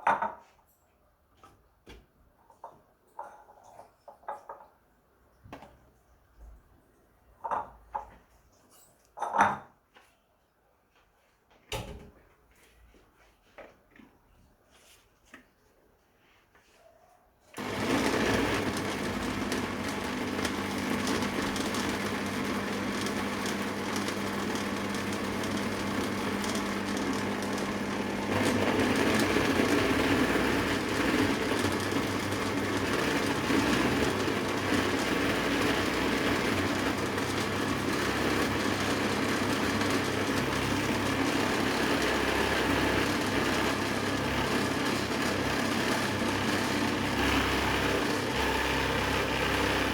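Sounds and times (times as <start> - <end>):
electric blender motor running: 17.6 - 49.9.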